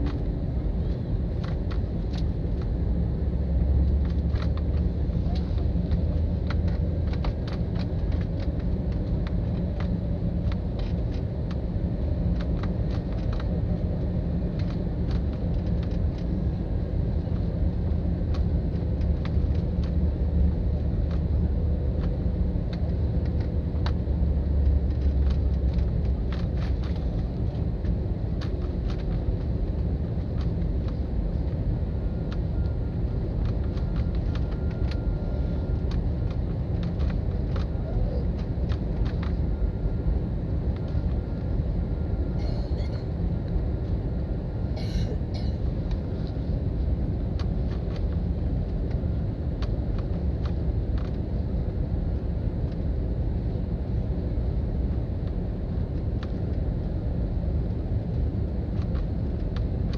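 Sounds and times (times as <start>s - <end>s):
airliner engines and airflow drone: 0.0s - 59.9s
small clicks and rattles: 24.9s - 31.6s.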